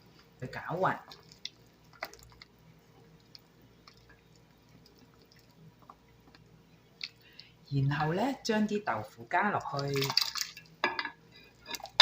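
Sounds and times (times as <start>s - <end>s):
liquid sloshing in a pot: 0.9s - 6.0s, 9.5s - 12.0s.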